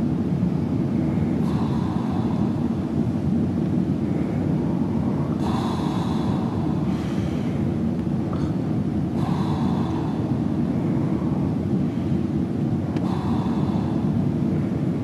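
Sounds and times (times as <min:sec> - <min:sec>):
steady low drone: 0:00.0 - 0:15.0.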